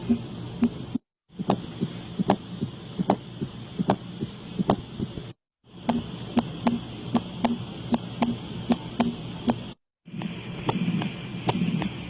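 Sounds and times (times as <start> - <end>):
soft low heart sound: 0.0 - 12.0
heartbeat clicks through stethoscope: 1.4 - 5.2.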